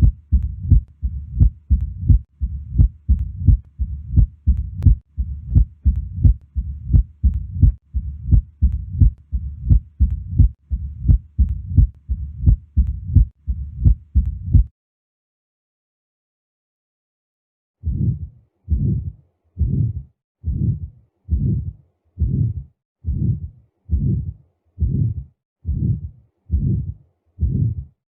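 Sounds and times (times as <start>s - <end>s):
heartbeat through stethoscope: 0.0s - 14.7s, 17.8s - 28.0s
low rumble: 0.0s - 14.7s.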